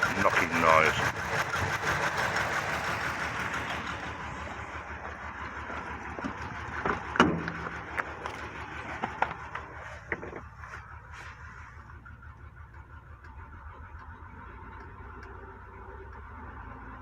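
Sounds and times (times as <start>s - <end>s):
light engine knocking: 0.0s - 10.8s
misfiring engine running: 0.0s - 17.0s.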